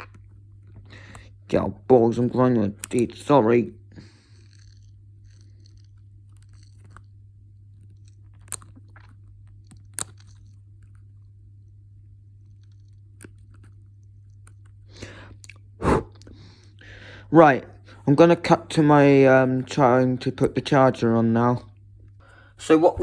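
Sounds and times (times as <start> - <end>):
steady low hum: 0.0 - 23.0
sharp clicks: 2.8 - 3.2
person chewing crunchy food: 4.0 - 11.4, 12.3 - 16.5.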